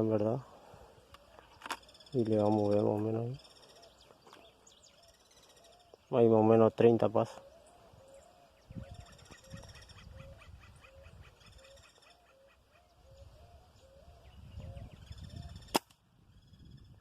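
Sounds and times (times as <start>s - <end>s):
birds calling: 0.0s - 17.0s
air rifle shot: 15.7s - 16.0s.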